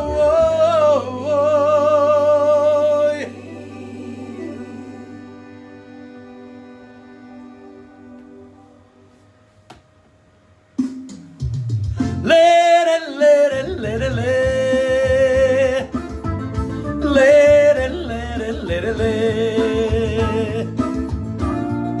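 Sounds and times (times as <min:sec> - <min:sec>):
steady low beat: 0:13.6 - 0:22.0
band playing folk dance music: 0:14.2 - 0:22.0.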